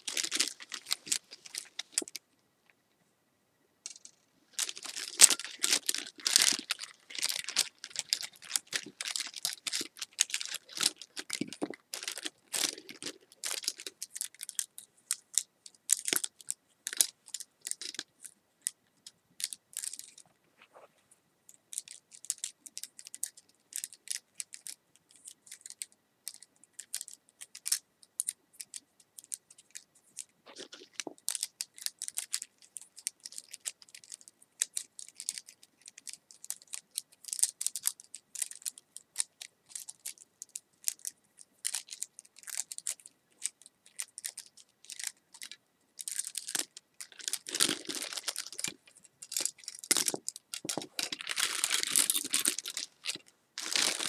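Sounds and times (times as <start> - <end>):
sharp clicks and rustles: 0.0 - 3.0, 3.8 - 15.2, 41.7 - 54.0.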